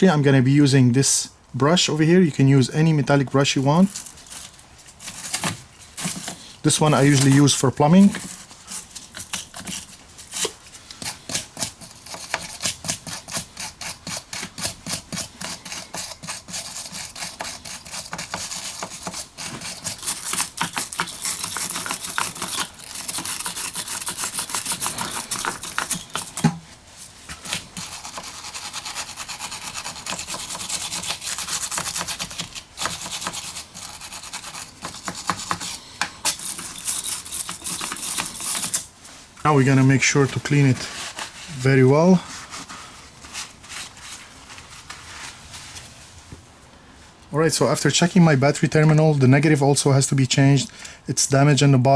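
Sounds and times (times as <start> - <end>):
wire brush scrubbing metal: 3.1 - 26.4, 27.0 - 38.9.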